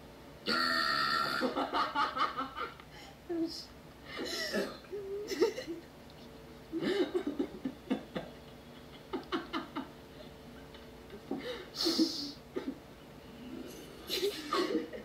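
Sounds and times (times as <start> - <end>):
person laughing: 4.2 - 5.8, 6.8 - 10.3, 11.1 - 12.8, 14.1 - 15.0.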